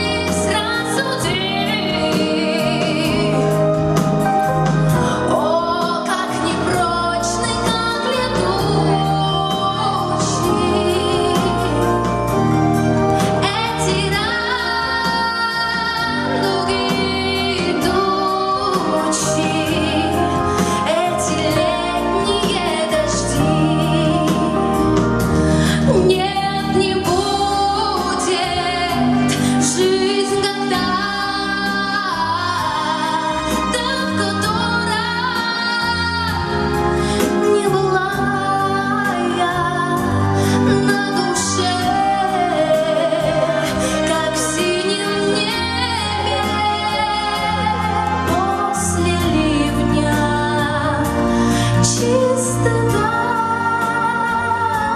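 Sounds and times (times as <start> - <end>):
instrumental accompaniment: 0.0 - 54.9
woman singing a pop song: 0.0 - 54.9.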